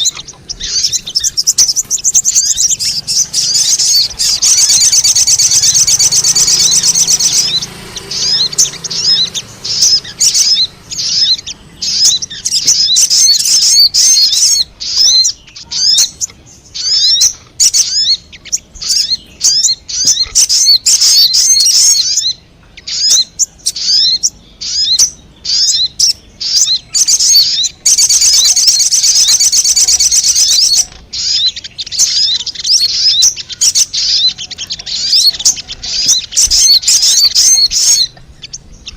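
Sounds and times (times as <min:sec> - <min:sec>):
bird high-pitched chirps: 0:00.0 - 0:38.9
bird trilling: 0:00.0 - 0:38.9.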